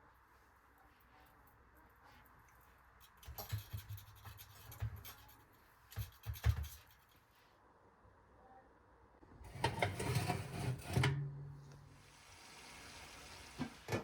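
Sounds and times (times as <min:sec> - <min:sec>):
scraping on a hard surface: 0:09.5 - 0:11.2.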